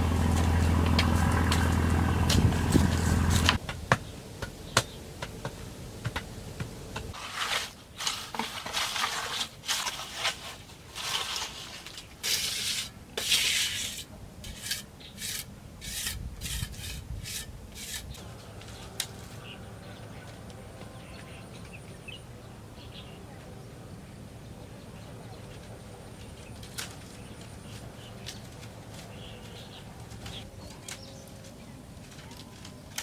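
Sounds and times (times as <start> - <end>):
low hum: 0.0 - 3.6
hand tool rasping wood: 12.2 - 18.2.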